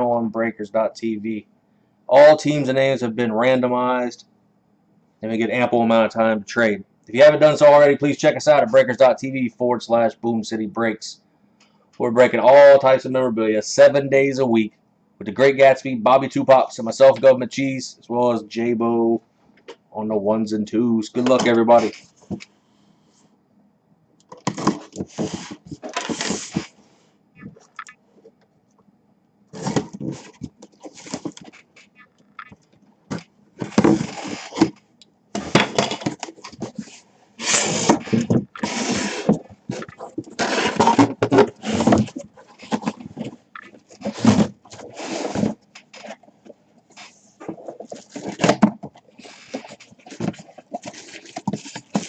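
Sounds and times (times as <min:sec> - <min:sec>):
packaging rustling and scraping: 0:24.3 - 0:26.9, 0:29.5 - 0:32.0, 0:33.1 - 0:34.8, 0:35.4 - 0:52.0.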